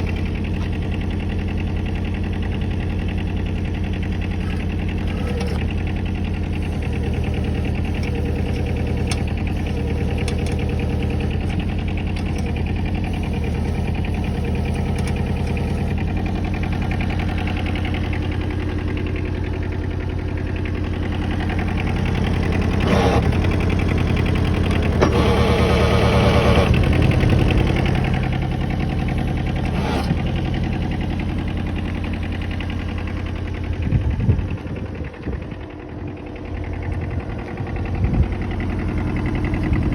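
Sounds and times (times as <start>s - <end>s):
excavator diesel engine running: 0.0s - 39.9s
engine straining under hydraulic load: 4.1s - 19.0s, 20.6s - 34.4s.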